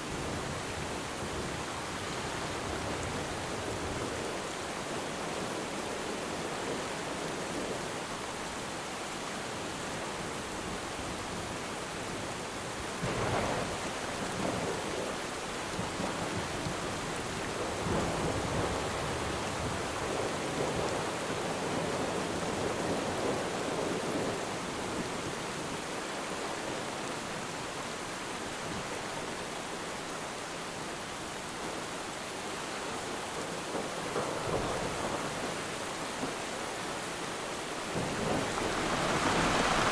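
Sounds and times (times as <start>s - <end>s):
rain falling on water: 0.0s - 39.9s
distant thunder rumbling: 37.9s - 39.9s.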